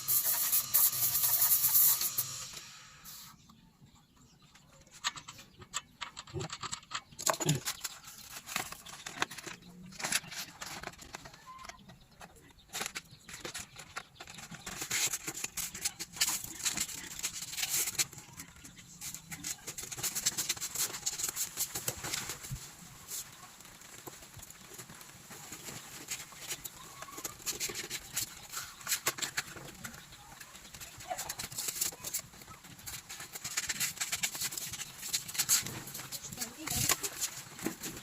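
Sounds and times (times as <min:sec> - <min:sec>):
scraping and rubbing on metal kettle: 0:00.0 - 0:03.3, 0:12.8 - 0:23.4, 0:25.3 - 0:38.0.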